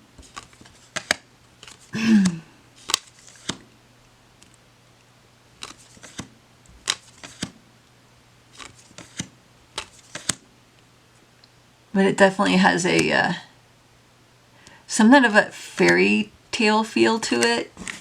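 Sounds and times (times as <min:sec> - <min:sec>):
cards clicking and snapping: 0:00.2 - 0:03.7, 0:05.6 - 0:07.6, 0:08.5 - 0:10.4
person humming: 0:02.0 - 0:02.5.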